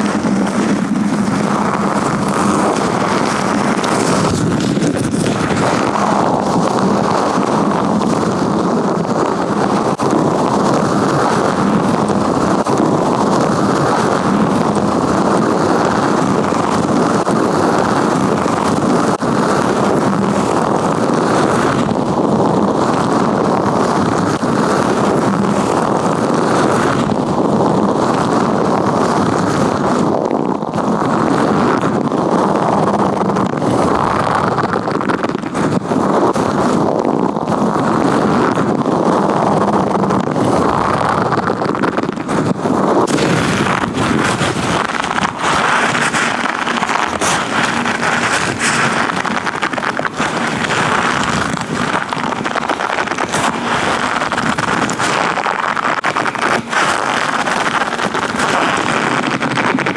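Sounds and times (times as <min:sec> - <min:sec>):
gloved hands rubbing microphone: 0:00.0 - 0:22.2, 0:39.2 - 0:59.9.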